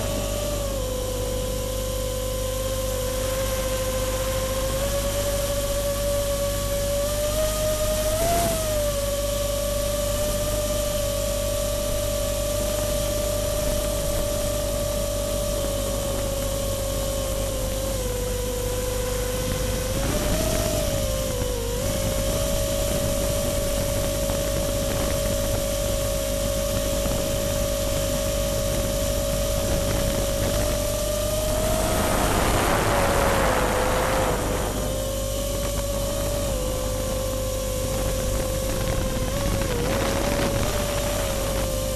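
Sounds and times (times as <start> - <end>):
drone motor hum: 0.0 - 41.9
air rush: 31.4 - 35.7.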